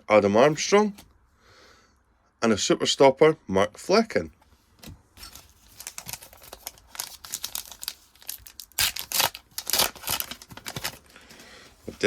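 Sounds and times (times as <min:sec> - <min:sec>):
foil wrapper tearing and crinkling: 0:05.2 - 0:11.2.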